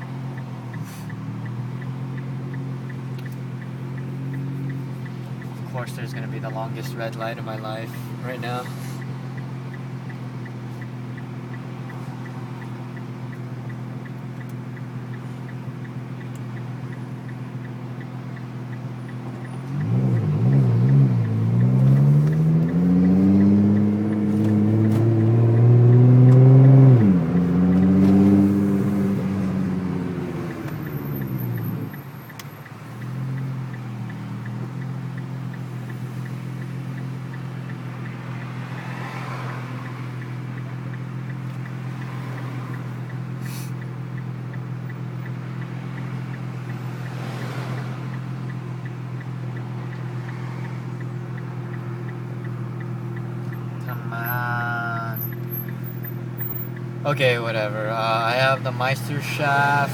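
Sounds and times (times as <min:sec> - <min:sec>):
car engine idling: 0:00.0 - 0:59.9
car accelerating hard: 0:18.2 - 0:32.4, 0:33.0 - 0:59.9.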